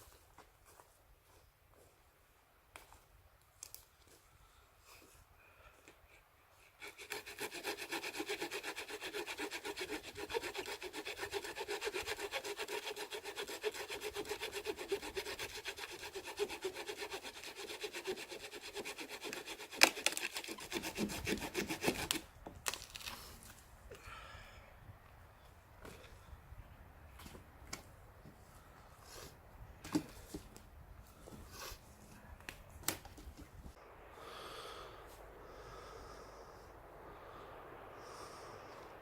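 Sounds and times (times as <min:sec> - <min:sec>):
hand saw cutting wood: 0:06.6 - 0:22.3.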